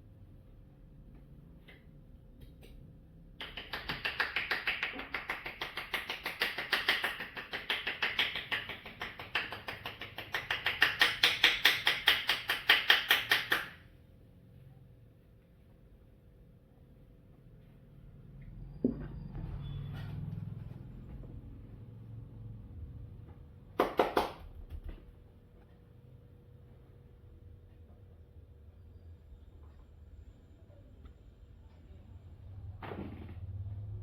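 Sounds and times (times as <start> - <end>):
percussive massage taps: 3.4 - 13.8, 23.8 - 25.1.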